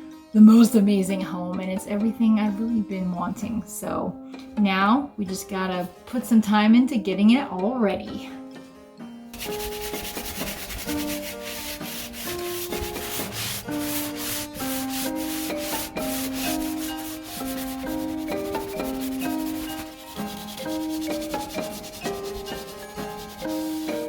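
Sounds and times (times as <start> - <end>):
slow melody background music: 0.0 - 24.0
sandpaper rubbing on wood: 9.4 - 24.0.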